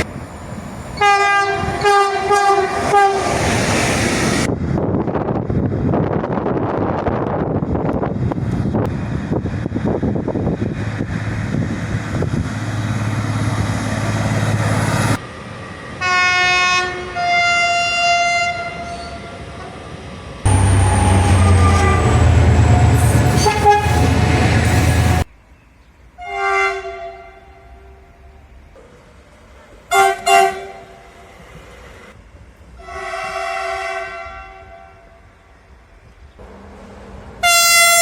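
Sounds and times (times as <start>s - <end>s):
train passing: 0.0s - 26.2s, 35.2s - 38.0s
train air horn blasts: 1.0s - 3.3s, 16.0s - 19.2s, 20.5s - 25.2s, 26.2s - 27.8s, 29.9s - 31.0s, 32.8s - 35.2s, 37.4s - 38.0s
wind on microphone: 4.3s - 14.0s.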